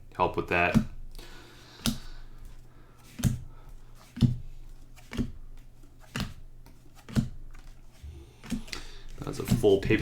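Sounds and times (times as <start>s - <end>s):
cards tapping on a table: 3.1s - 7.8s.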